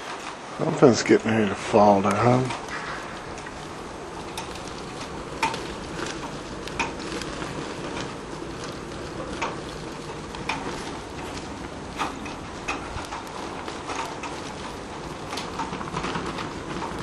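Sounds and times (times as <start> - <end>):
wind rushing: 0.8 - 17.0
sharp knocks and clatters: 2.1 - 17.0.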